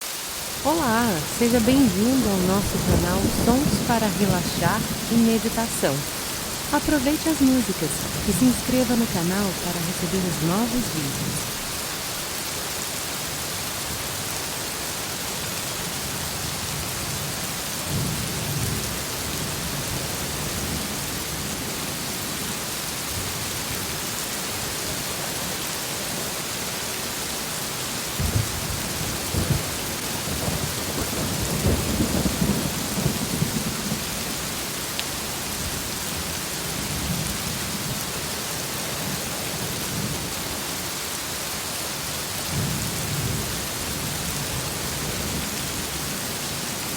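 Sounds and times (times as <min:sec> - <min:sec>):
heavy rain falling: 0:00.0 - 0:46.9
thunder rumbling: 0:00.5 - 0:12.0, 0:28.2 - 0:34.5.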